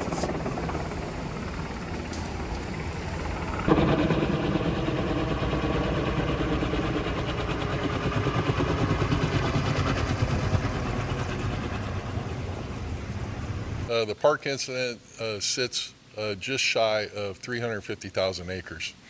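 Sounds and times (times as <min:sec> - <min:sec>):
engine running with low pulse: 0:00.0 - 0:13.9.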